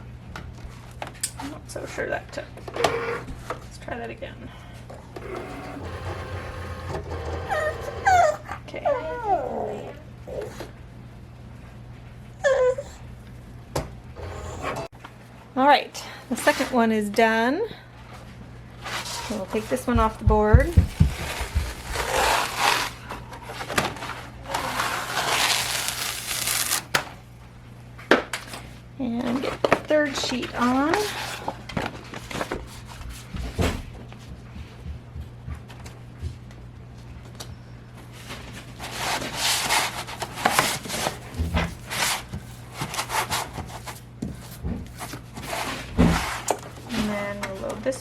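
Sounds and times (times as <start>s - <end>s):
vinyl peeling off sticky mat: 25.1s - 26.9s.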